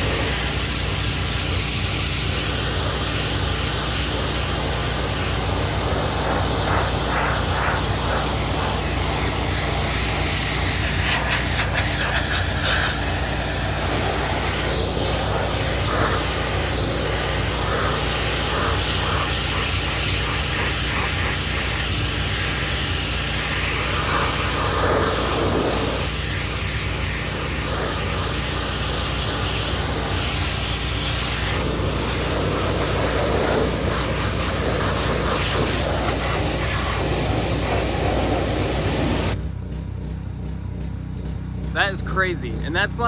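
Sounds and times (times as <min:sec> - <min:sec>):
pressure washer jet hissing: 0:00.0 - 0:39.4
engine running: 0:00.0 - 0:43.0.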